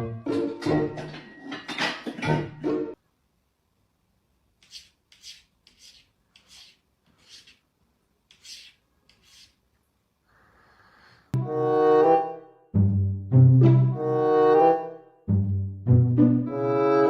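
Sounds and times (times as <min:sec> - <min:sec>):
faint short scraping strokes: 0:04.6 - 0:07.6, 0:08.3 - 0:09.6.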